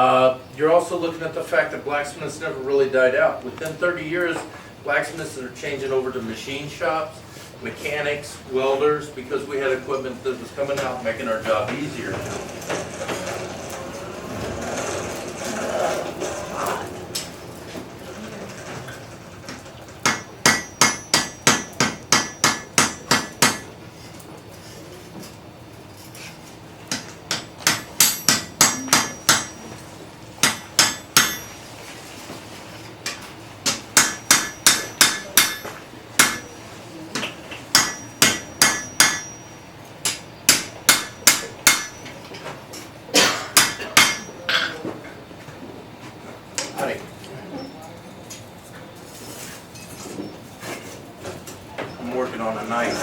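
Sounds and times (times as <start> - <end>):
hammer striking metal on anvil: 20.0 - 23.7, 26.9 - 29.7, 30.4 - 31.6, 33.7 - 36.5, 37.7 - 42.1, 43.2 - 44.8.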